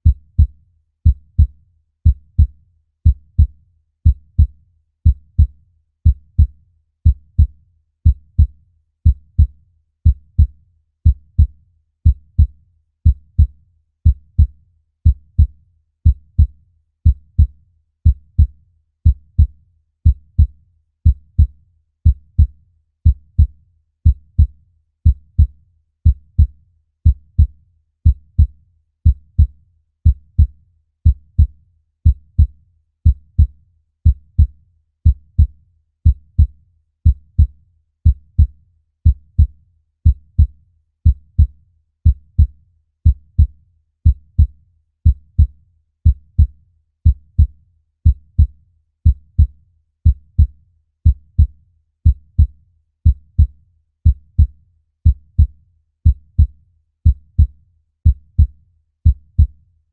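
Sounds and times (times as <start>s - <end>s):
heartbeat thumps: 45.1s - 47.5s, 48.1s - 49.5s, 50.1s - 50.5s, 51.1s - 52.5s, 53.1s - 53.5s, 54.1s - 56.5s, 57.1s - 59.6s.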